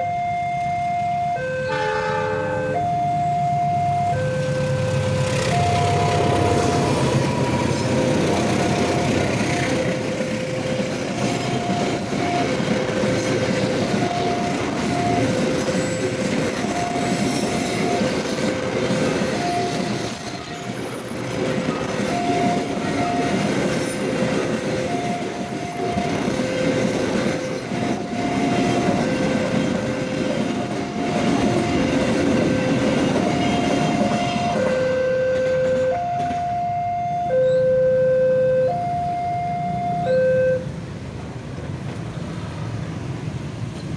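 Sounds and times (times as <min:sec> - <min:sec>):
level crossing two-note warning tone: 0:00.0 - 0:13.0, 0:32.5 - 0:40.7
train rumbling and clattering: 0:01.7 - 0:37.6, 0:40.4 - 0:43.9.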